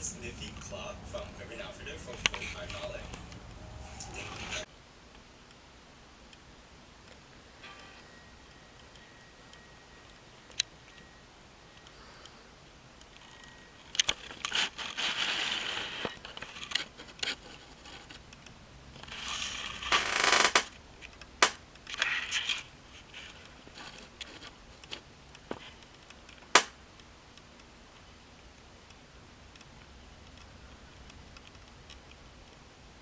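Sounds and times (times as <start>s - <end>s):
scraping and rustling: 13.2s - 18.2s, 19.0s - 20.7s.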